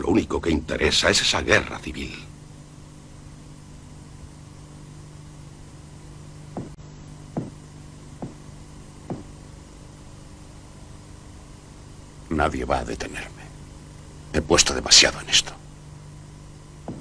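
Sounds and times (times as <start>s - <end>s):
low hum: 0.0s - 17.0s
dull knocks: 6.5s - 7.6s, 8.2s - 8.4s, 9.1s - 9.4s.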